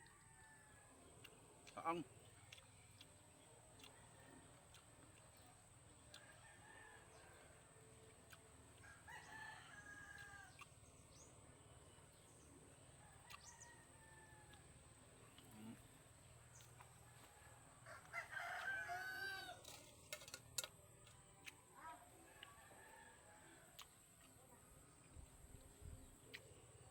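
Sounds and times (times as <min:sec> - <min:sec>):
rooster crowing: 0:17.2 - 0:19.6.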